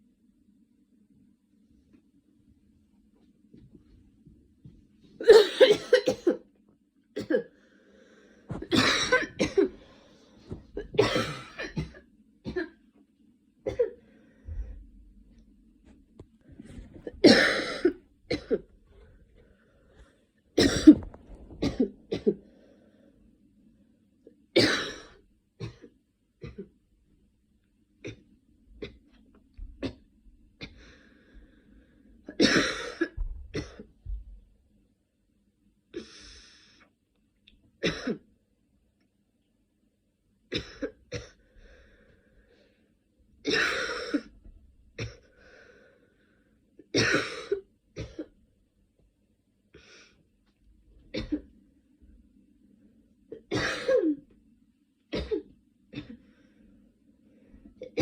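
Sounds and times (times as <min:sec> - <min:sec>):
person clearing throat: 0:05.2 - 0:06.4, 0:08.5 - 0:09.8, 0:10.8 - 0:12.8, 0:17.0 - 0:18.6, 0:20.6 - 0:22.4
person coughing: 0:05.2 - 0:06.5, 0:07.2 - 0:07.6, 0:08.5 - 0:09.8, 0:10.8 - 0:12.8, 0:13.7 - 0:14.0, 0:17.0 - 0:18.7, 0:20.6 - 0:22.4, 0:24.6 - 0:26.7, 0:32.3 - 0:33.9, 0:37.8 - 0:38.2, 0:43.5 - 0:44.3, 0:47.0 - 0:48.3, 0:51.1 - 0:51.5, 0:53.4 - 0:54.2.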